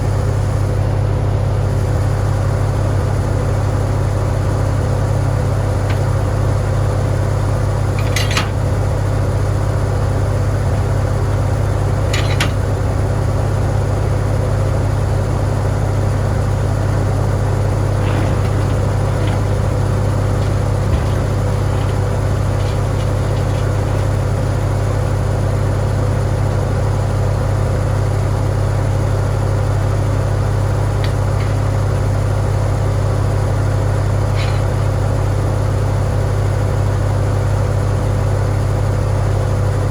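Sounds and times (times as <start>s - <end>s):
tractor engine droning: 0.0s - 39.9s.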